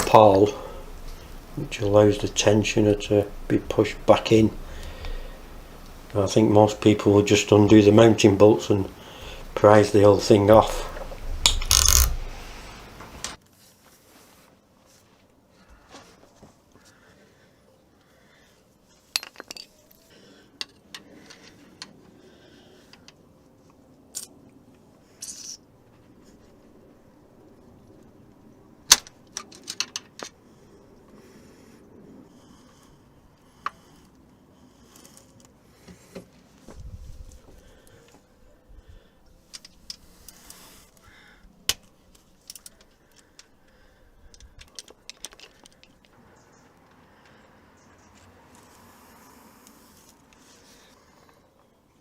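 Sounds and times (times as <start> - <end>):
metallic clicks of hand tools: 11.2 - 12.3.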